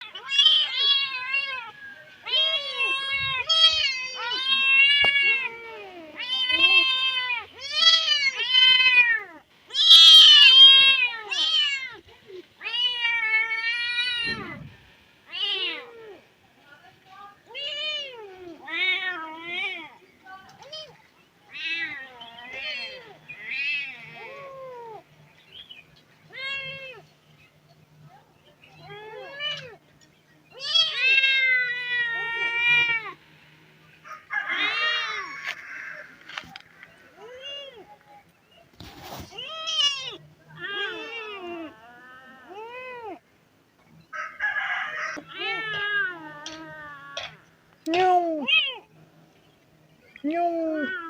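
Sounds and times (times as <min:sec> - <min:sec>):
kittens meowing loudly: 0:00.0 - 0:12.0, 0:12.6 - 0:16.2, 0:17.5 - 0:20.0, 0:20.6 - 0:25.0, 0:26.3 - 0:27.1, 0:28.8 - 0:29.8, 0:30.5 - 0:33.2, 0:34.0 - 0:37.9, 0:39.3 - 0:43.2, 0:44.6 - 0:47.5.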